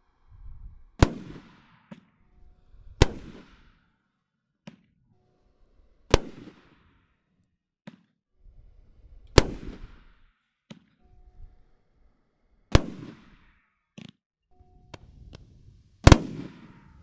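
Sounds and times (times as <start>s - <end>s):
firework shell bursts: 14.9s - 17.0s.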